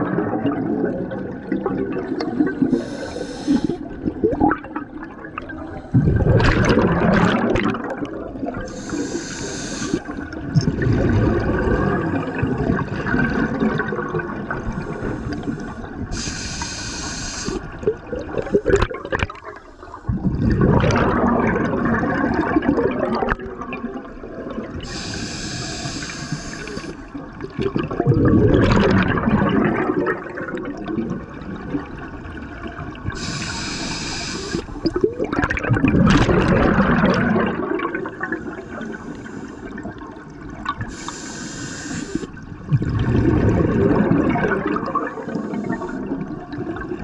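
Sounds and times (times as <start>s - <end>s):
bubbling exhaled air underwater: 0.0s - 47.0s
hissing regulator inhale: 2.5s - 3.9s, 8.7s - 10.2s, 14.8s - 17.8s, 19.6s - 20.2s, 24.8s - 27.1s, 33.2s - 34.9s, 38.2s - 39.9s, 40.9s - 42.4s, 45.1s - 46.1s.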